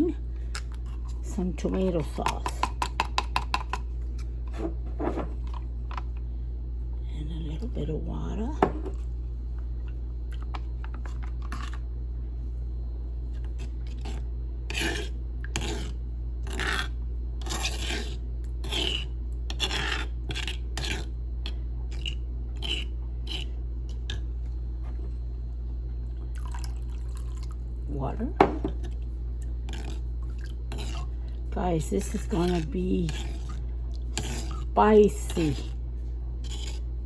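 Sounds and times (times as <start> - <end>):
stone pestle grinding in mortar: 13.9 - 21.1, 21.9 - 23.6, 30.7 - 31.0, 31.8 - 35.8, 36.4 - 36.9.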